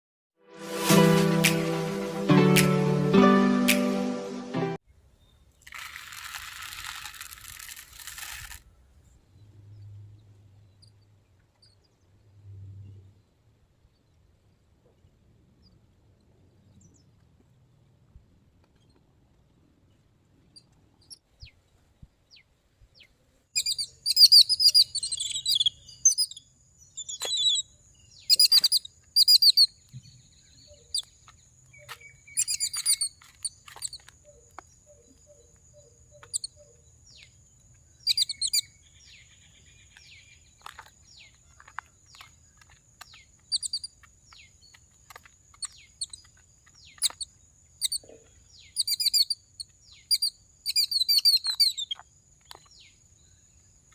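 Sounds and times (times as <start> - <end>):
small birds chirping: 8.2 - 14.3, 19.9 - 53.9.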